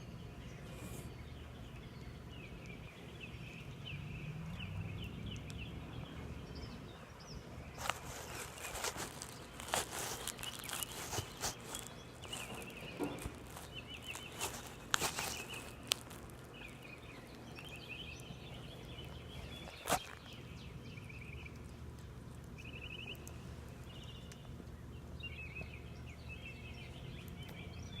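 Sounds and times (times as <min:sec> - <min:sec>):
bird chirping and trilling: 0:00.3 - 0:21.5.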